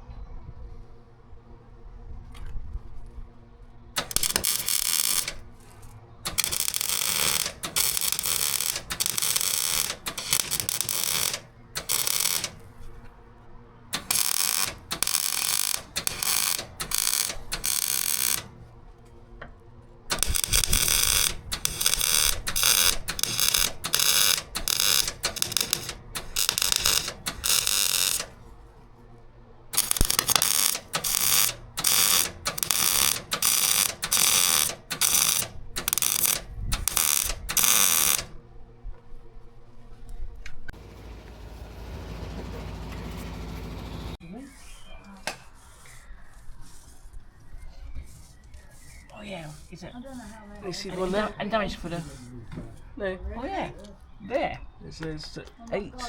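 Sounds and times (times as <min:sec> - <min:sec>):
welding crackling: 0:04.0 - 0:13.1, 0:13.9 - 0:18.8, 0:20.1 - 0:28.6, 0:29.8 - 0:38.4, 0:48.9 - 0:52.3.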